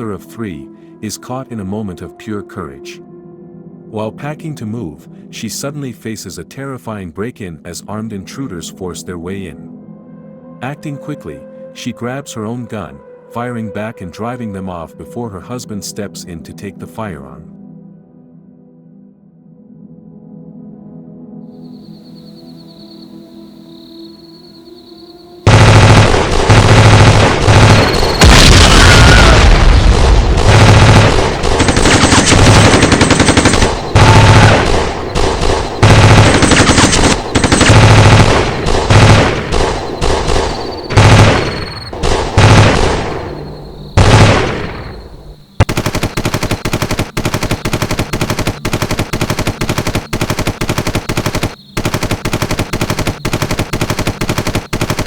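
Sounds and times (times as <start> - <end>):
rapid sharp cracks: 25.5 - 43.4, 45.6 - 55.0
distorted gunshots: 25.5 - 55.0.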